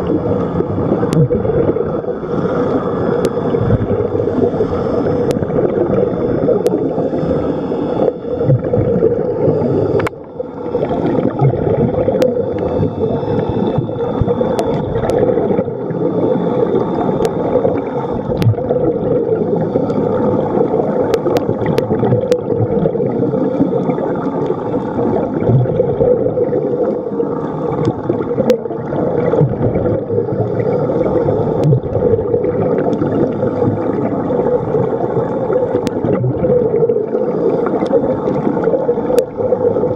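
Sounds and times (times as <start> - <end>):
gurgling bubbles: 0.0 - 39.9
muffled underwater rumble: 0.0 - 39.9
faint clicks: 10.0 - 10.2, 13.7 - 15.2.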